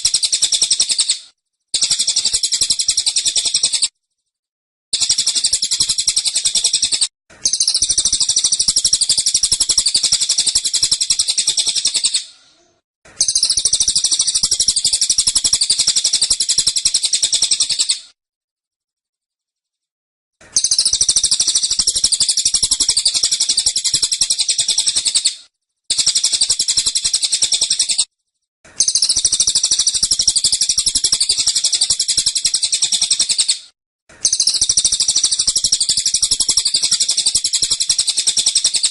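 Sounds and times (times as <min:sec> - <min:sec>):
songbird high-pitched trilling: 0:34.2 - 0:38.9.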